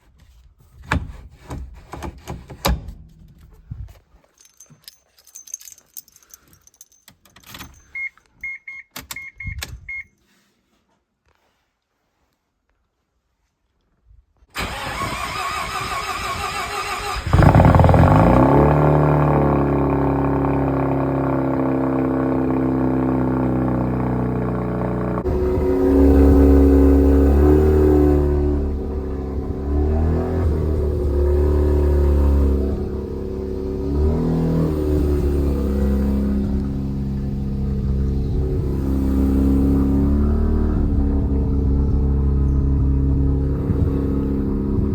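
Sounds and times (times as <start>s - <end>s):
starter motor cranking: 14.6s - 23.6s
rotary engine idling: 17.3s - 44.9s.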